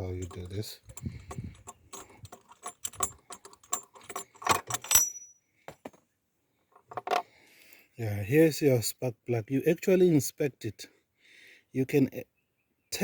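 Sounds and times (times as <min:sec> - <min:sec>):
metal parts and tools clinking: 0:00.0 - 0:06.0, 0:06.8 - 0:07.2
bright metallic ring: 0:04.9 - 0:05.4.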